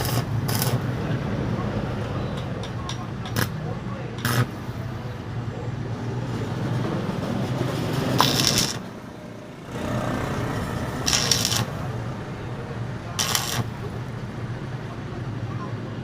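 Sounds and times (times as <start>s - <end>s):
welding arc crackling: 0.0s - 1.0s, 3.3s - 3.6s, 4.2s - 4.8s, 8.2s - 8.9s, 10.9s - 11.8s, 13.2s - 14.2s.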